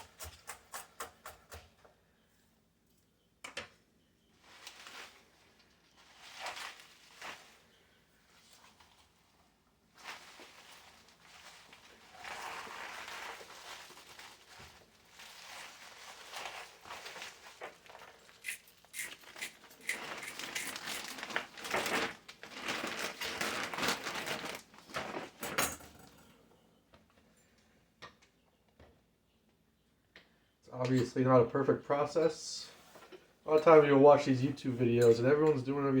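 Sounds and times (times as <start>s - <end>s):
leaves rustling and crinkling: 4.4s - 25.5s.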